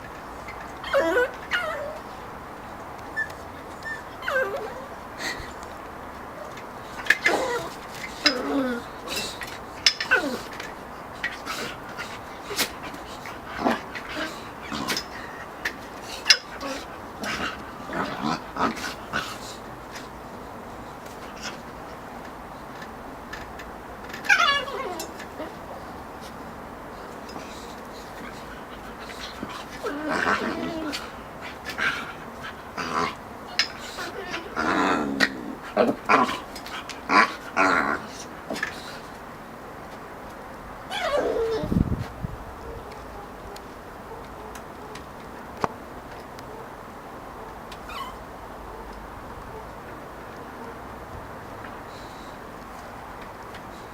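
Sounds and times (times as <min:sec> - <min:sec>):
dogs barking and yipping: 0:00.0 - 0:41.7, 0:42.5 - 0:51.1
puppies play-fighting noises: 0:00.0 - 0:41.8, 0:42.5 - 0:53.9
dog whining: 0:00.8 - 0:02.2, 0:03.1 - 0:05.6, 0:06.3 - 0:19.7, 0:24.2 - 0:25.9, 0:27.3 - 0:39.1, 0:40.9 - 0:41.8, 0:47.4 - 0:48.9.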